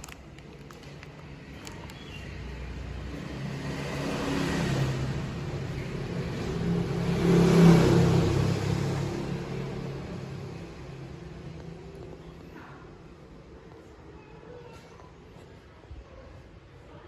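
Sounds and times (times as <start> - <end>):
vehicle engine passing by: 2.2 - 13.0.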